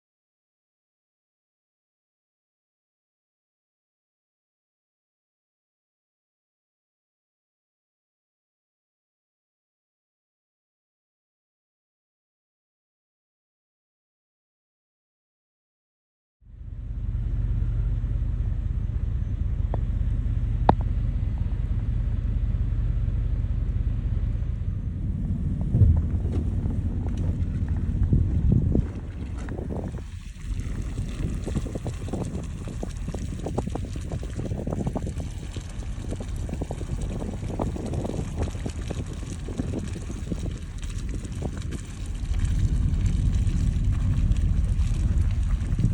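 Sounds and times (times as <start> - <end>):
vehicle engine rumbling: 16.5 - 45.9
wind buffeting microphone: 19.6 - 45.9.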